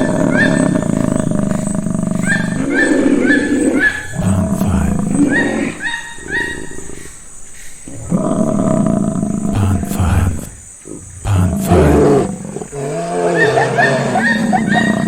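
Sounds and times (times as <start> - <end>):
low rough animal calls: 0.0 - 15.0.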